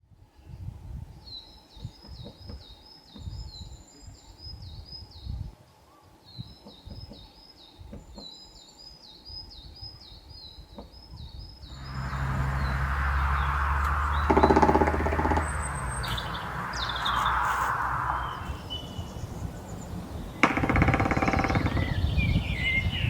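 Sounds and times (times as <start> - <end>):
low wind rumble: 0.1 - 5.6, 9.3 - 23.0
songbird singing high notes: 11.6 - 23.0
loud rushing noise: 11.7 - 21.6.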